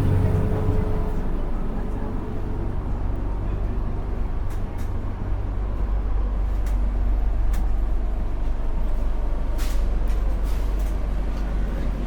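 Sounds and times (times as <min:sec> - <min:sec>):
train rumbling: 0:00.0 - 0:12.0.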